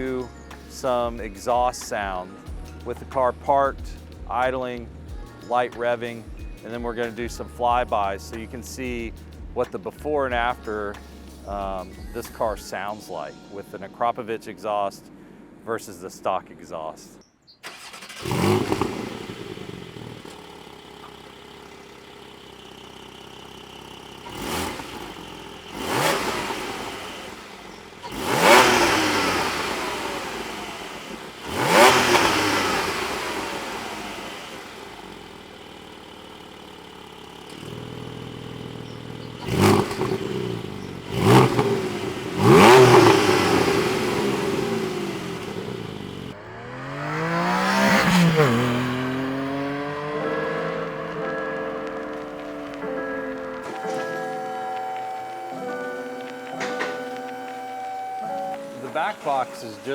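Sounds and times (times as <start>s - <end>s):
car engine revving and idling: 17.6s - 59.9s.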